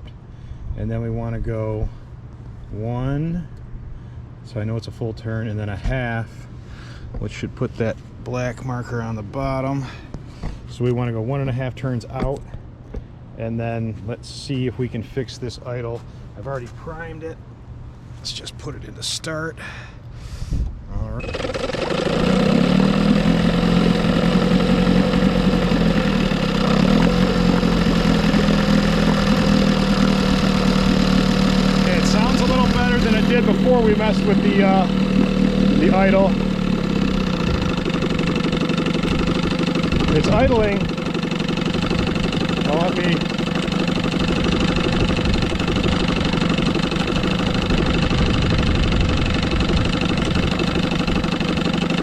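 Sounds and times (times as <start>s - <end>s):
outboard motor running: 21.1s - 52.0s.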